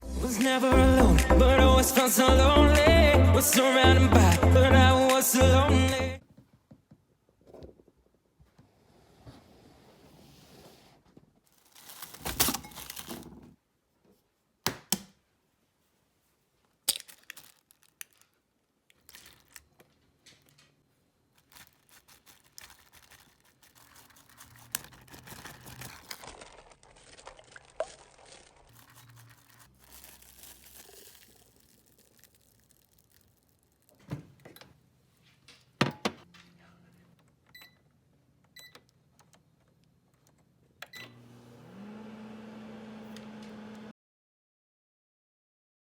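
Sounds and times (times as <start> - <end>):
rustling: 10.1 - 13.6, 15.8 - 34.1
crinkling and tearing: 11.4 - 13.4, 16.6 - 34.1.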